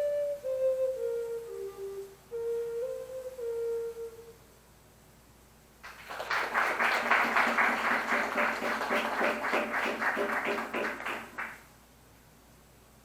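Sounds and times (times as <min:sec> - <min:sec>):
flute piece: 0:00.0 - 0:04.4
audience applauding: 0:05.8 - 0:11.6.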